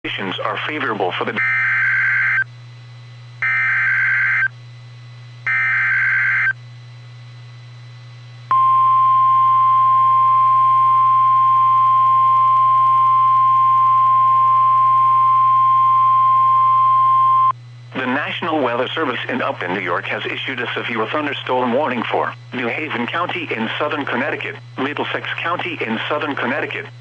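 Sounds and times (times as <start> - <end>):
steady warning alarm tone: 1.4 - 2.5, 3.4 - 4.5, 5.4 - 6.6.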